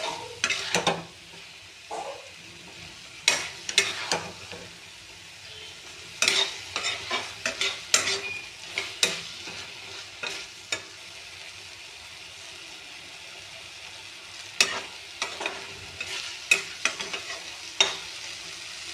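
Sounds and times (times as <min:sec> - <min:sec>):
spoon scraping a pan: 0:00.0 - 0:02.4, 0:03.2 - 0:04.8, 0:05.6 - 0:11.0, 0:14.6 - 0:18.2
low frying sizzle: 0:00.0 - 0:18.9.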